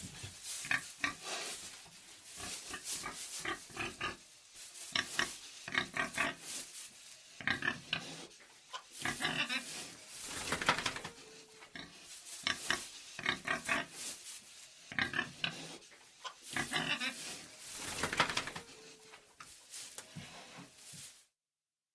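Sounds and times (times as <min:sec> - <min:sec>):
pig grunting and oinking: 0:02.4 - 0:04.2, 0:05.0 - 0:06.4, 0:07.4 - 0:11.1, 0:11.8 - 0:14.0, 0:14.9 - 0:18.6.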